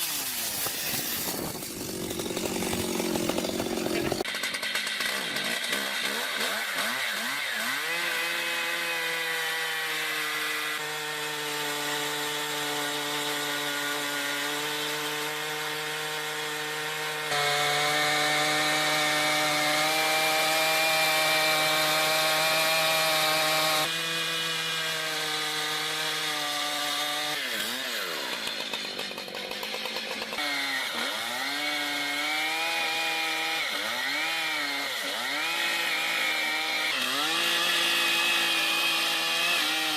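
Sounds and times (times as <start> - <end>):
chainsaws cutting wood: 0.0 - 39.9.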